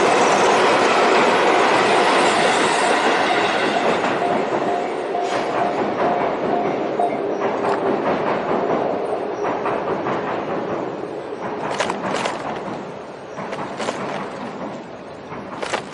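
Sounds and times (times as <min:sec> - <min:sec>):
train wheels rumbling: 0:00.0 - 0:15.9
clatter over rail joints: 0:05.2 - 0:15.9.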